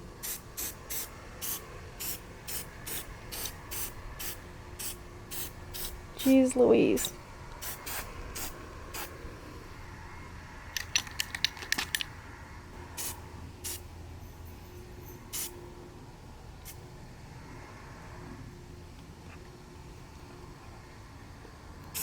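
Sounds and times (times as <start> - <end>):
spray paint can hissing: 0.2 - 6.4, 7.0 - 9.1, 13.0 - 13.8, 15.3 - 15.5.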